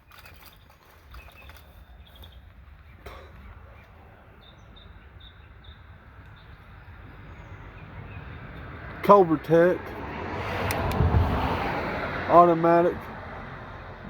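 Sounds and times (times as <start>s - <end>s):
small bird chirping: 0.0s - 8.3s
steady low rumble: 2.4s - 14.0s.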